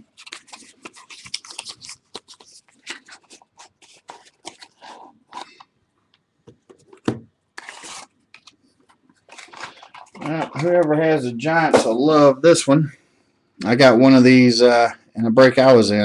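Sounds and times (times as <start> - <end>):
card packaging crinkling: 0.0 - 5.6, 7.6 - 10.9.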